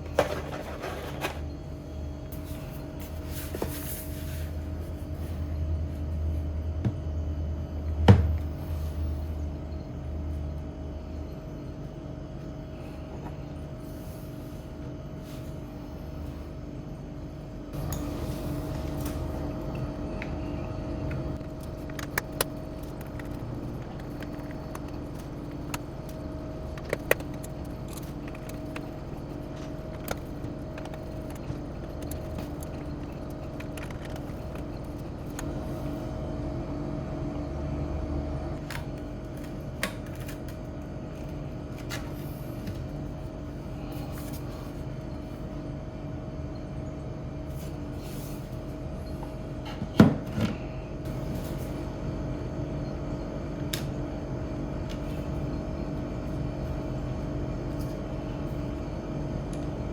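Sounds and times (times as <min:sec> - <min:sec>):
steady hum: 0:00.0 - 0:59.9
hard objects clicking and clinking: 0:21.4 - 0:35.5.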